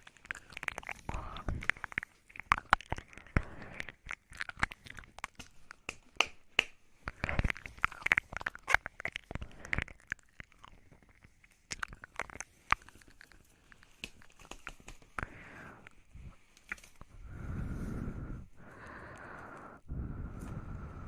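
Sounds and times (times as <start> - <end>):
lip smacks and tongue clicks: 0.0 - 16.0.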